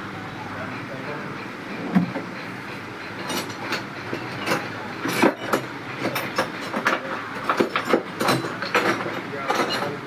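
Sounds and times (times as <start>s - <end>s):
hard objects clicking and knocking: 3.2s - 10.0s.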